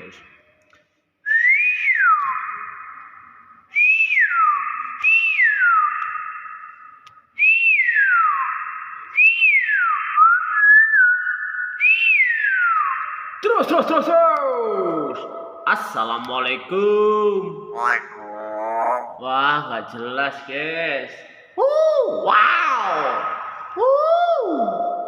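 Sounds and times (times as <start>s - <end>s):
myna whistling: 1.3s - 13.4s.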